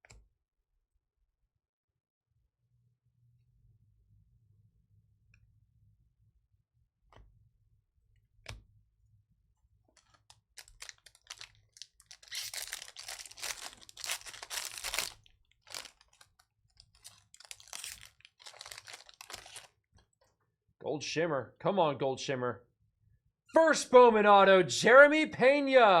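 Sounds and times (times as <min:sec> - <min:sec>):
cards handled: 0:10.0 - 0:19.7
foil wrapper tearing and crinkling: 0:10.0 - 0:19.8.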